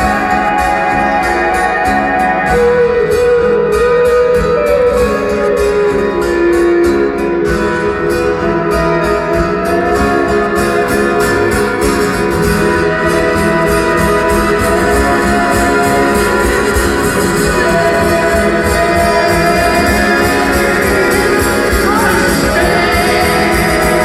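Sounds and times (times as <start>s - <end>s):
live band music: 0.0s - 24.0s
sustained organ-like tones: 11.2s - 24.0s.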